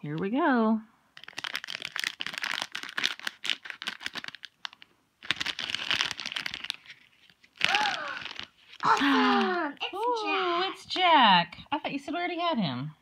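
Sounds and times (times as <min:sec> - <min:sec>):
plastic wrapper crinkling and tearing: 0:01.2 - 0:09.8.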